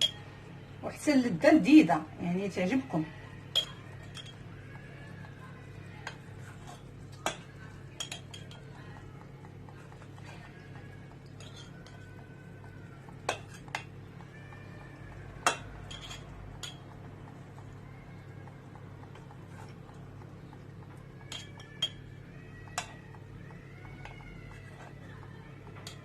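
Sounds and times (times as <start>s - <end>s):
utensil clinking against glass: 15.4s - 16.9s.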